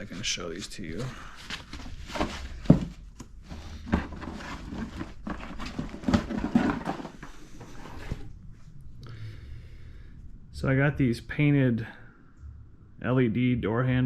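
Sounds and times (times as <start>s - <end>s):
hard objects knocking and clunking: 1.7s - 8.2s.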